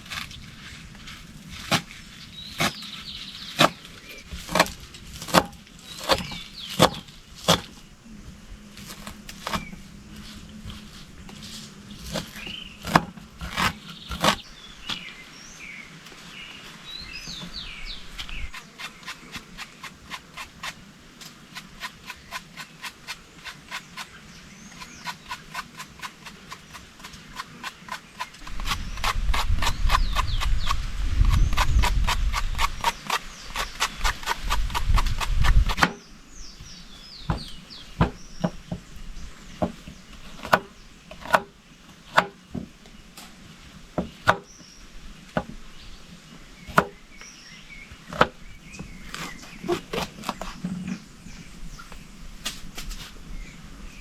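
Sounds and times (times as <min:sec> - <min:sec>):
birds chirping: 0:00.0 - 0:54.0.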